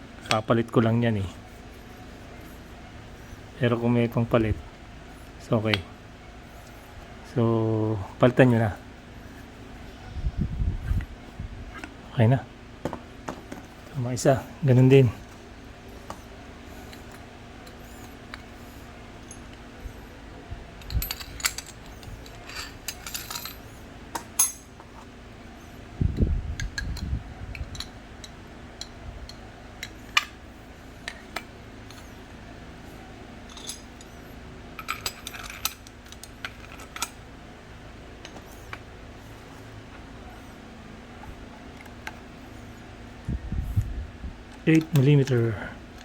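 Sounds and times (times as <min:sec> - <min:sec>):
metal tools clinking: 0:20.8 - 0:23.7, 0:24.4 - 0:24.7, 0:33.4 - 0:34.2, 0:34.8 - 0:37.2.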